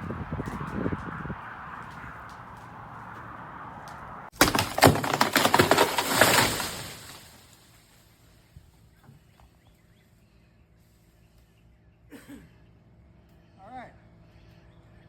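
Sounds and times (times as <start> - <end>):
branches snapping: 3.8 - 7.9
tree cracking and crashing down: 4.3 - 8.2.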